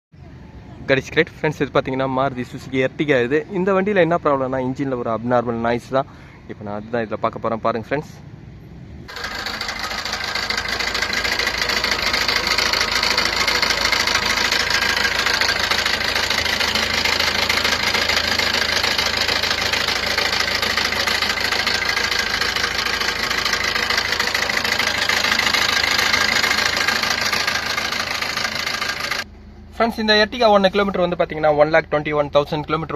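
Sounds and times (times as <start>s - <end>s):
car engine rattling: 9.0s - 32.9s.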